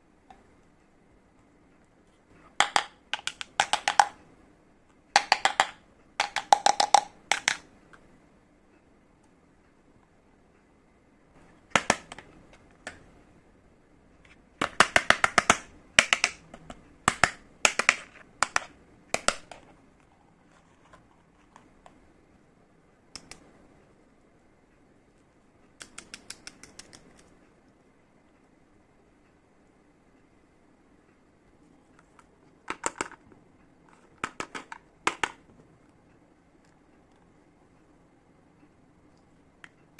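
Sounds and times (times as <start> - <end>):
plastic toy pieces clicking: 2.6 - 4.2, 5.2 - 7.6, 14.6 - 19.6.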